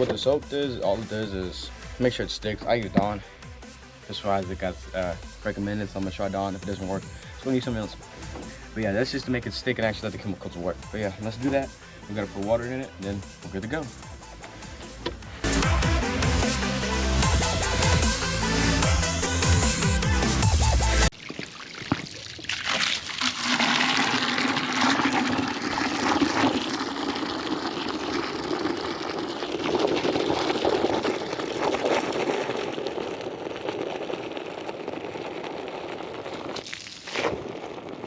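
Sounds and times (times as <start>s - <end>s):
water filling a bucket: 4.1s - 19.7s, 21.1s - 38.0s.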